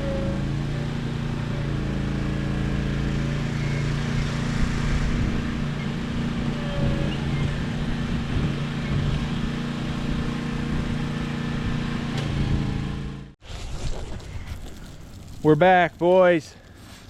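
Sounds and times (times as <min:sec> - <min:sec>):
engine running steadily: 0:00.0 - 0:13.4.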